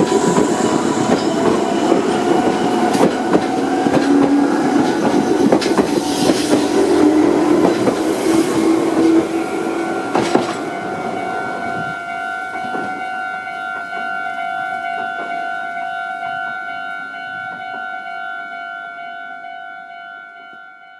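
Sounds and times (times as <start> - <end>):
passing train: 0.0 - 20.9
level crossing alarm bells: 8.6 - 20.9.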